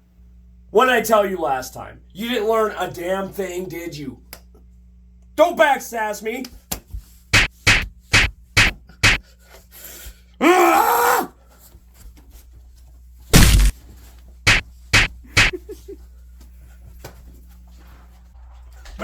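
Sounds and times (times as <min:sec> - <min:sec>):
heavy thump: 0:07.4 - 0:09.2, 0:13.4 - 0:13.7, 0:14.5 - 0:15.5
sharp smacks: 0:07.4 - 0:09.2, 0:13.4 - 0:13.7, 0:14.5 - 0:15.5.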